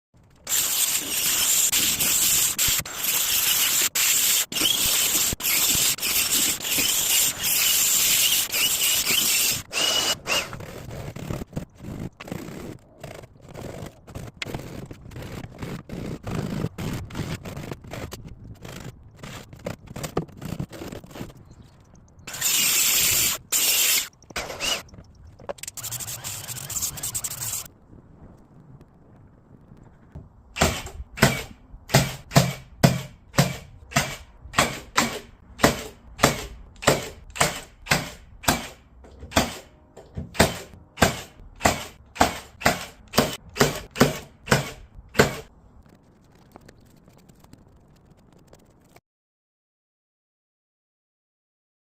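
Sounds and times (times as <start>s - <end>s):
woodworking tool scraping wood: 0.5s - 21.4s, 22.3s - 27.7s.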